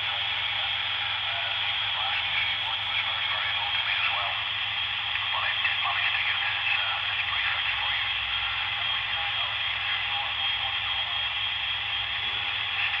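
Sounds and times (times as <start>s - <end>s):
garbled weak radio signals: 0.0s - 4.1s
radio band noise hiss: 0.0s - 13.0s.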